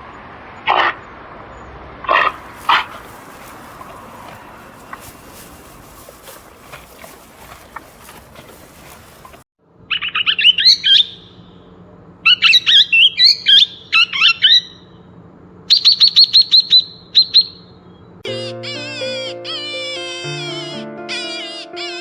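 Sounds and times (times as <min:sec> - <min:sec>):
songbird chirping: 0:02.3 - 0:09.4.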